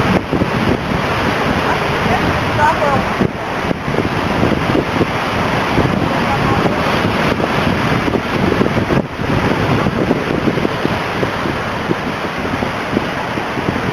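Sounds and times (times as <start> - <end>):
heavy surf breaking on shore: 0.0 - 13.9
wind buffeting microphone: 0.0 - 13.9.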